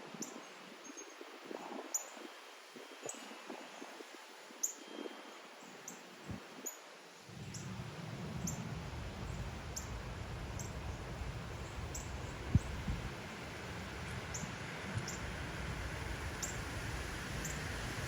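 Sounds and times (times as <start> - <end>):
wind buffeting microphone: 7.3 - 18.0.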